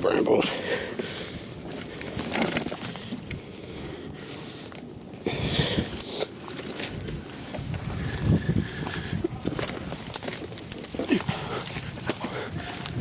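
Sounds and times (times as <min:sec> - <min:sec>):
brambles and twigs rustling: 0:00.0 - 0:13.0
twigs snapping: 0:08.9 - 0:13.0.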